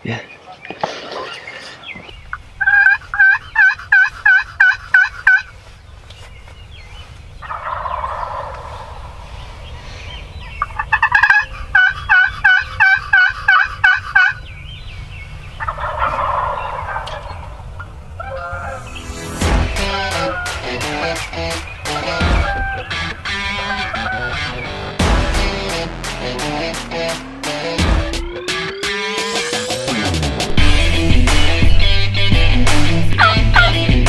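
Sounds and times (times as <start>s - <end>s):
turkey rattling gobble: 2.1s - 24.9s, 33.1s - 34.0s
turkey yelps: 2.2s - 25.0s, 33.2s - 34.0s.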